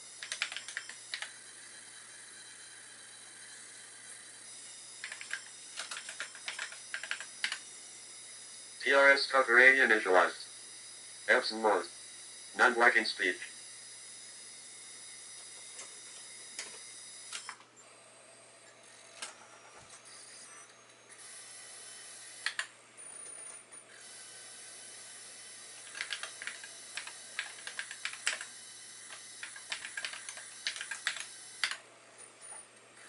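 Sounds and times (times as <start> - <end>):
high electronic whine: 0.0 - 18.0, 18.8 - 31.8
computer keyboard typing: 0.2 - 1.3, 5.0 - 7.6, 22.4 - 22.7, 25.8 - 31.8.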